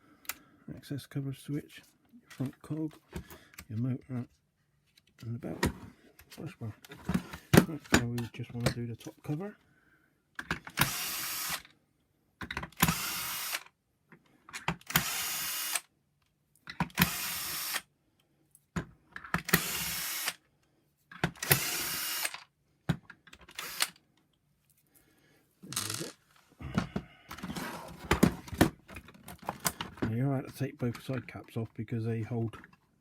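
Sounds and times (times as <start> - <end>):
clicks and rattles of parts: 10.4 - 10.8, 12.4 - 12.9, 13.6 - 15.0, 16.6 - 17.0, 18.6 - 19.6, 22.3 - 24.3, 25.7 - 26.2, 26.8 - 31.6
electric screwdriver running: 10.8 - 11.6, 12.8 - 13.6, 14.9 - 15.8, 17.0 - 17.8, 19.5 - 20.4, 21.4 - 22.4, 23.5 - 24.0.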